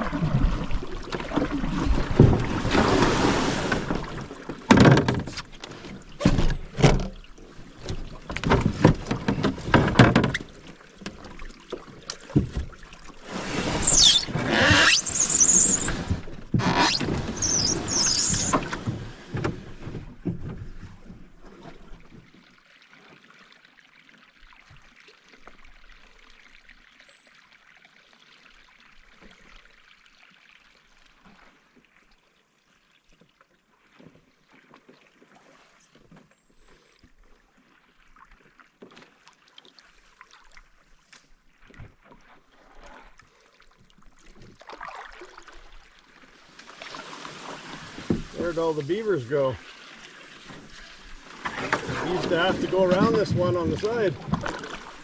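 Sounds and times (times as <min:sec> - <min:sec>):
paddle knocking: 0:00.0 - 0:22.1, 0:46.9 - 0:49.0, 0:49.7 - 0:55.0
paddle strokes in water: 0:00.0 - 0:23.7, 0:29.0 - 0:55.0
sharp high squeak: 0:13.7 - 0:18.7.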